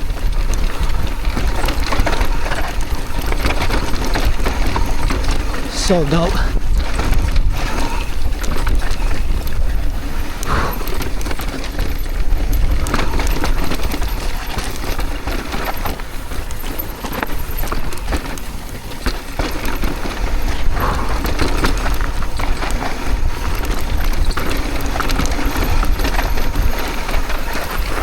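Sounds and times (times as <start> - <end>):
bike rattling and knocking: 17.4 - 20.8, 21.4 - 28.0
wind rumble on microphone: 20.2 - 28.0.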